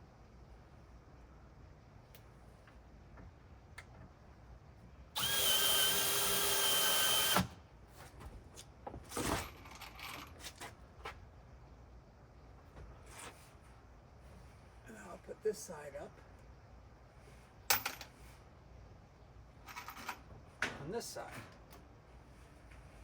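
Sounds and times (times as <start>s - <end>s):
cordless drill driving a screw: 5.2s - 7.5s.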